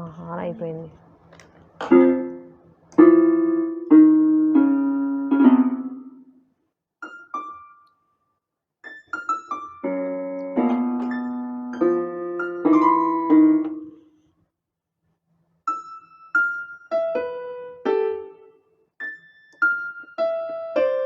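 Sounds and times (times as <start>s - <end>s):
keyboard piano chords and notes: 1.3s - 6.4s, 7.0s - 8.0s, 8.8s - 14.2s, 15.7s - 21.0s.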